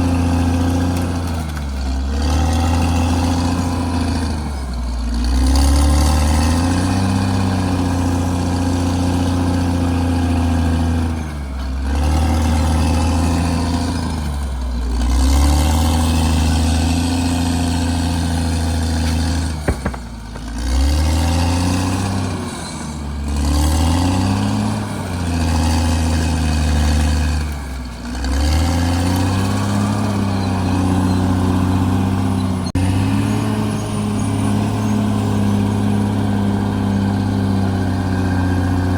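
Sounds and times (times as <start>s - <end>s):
bulldozer engine running under load: 0.0s - 38.9s
sharp knocks: 19.6s - 20.6s.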